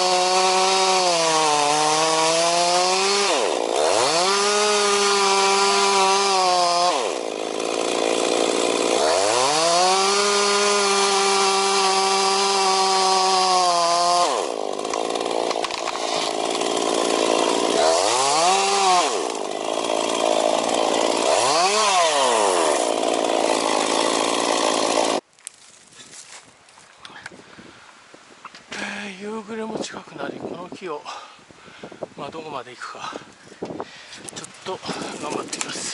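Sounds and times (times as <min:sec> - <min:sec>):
chainsaw revving and cutting wood: 0:00.0 - 0:25.6, 0:34.1 - 0:35.9.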